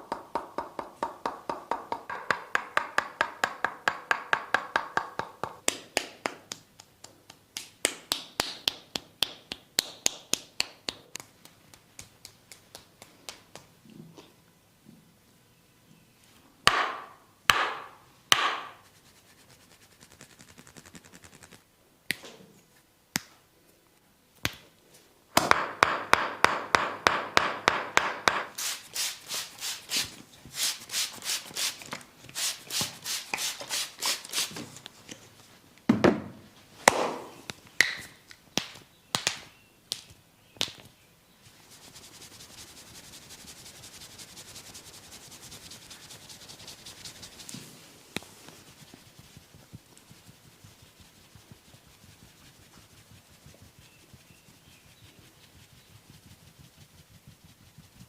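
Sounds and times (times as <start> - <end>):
massage taps: 0.0 - 13.7, 16.7 - 18.8
massage rubbing strokes: 18.7 - 21.7, 28.6 - 34.6, 41.4 - 58.0.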